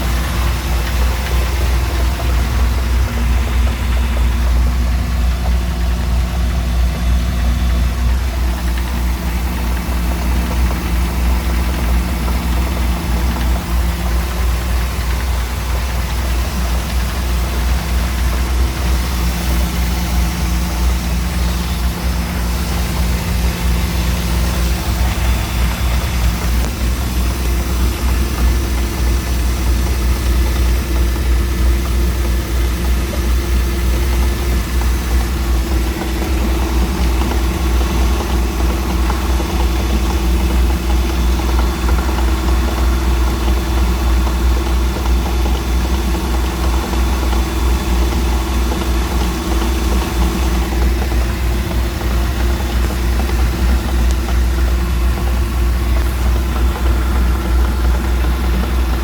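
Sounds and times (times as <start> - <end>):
boat engine idling: 0.0 - 59.0
engine knocking: 0.0 - 59.0.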